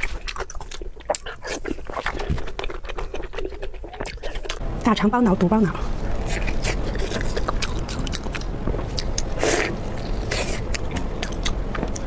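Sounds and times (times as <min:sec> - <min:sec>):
person chewing food: 0:00.0 - 0:04.6, 0:05.9 - 0:12.0
crunchy bites: 0:06.1 - 0:12.0.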